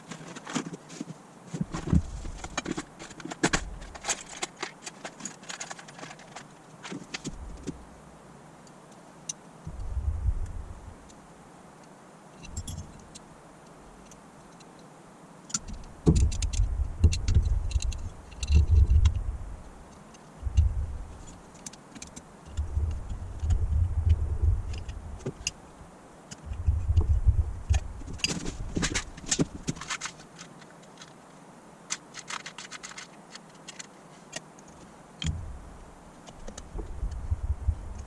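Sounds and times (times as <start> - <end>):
low thumps from handling: 26.5 - 29.8, 35.2 - 35.7.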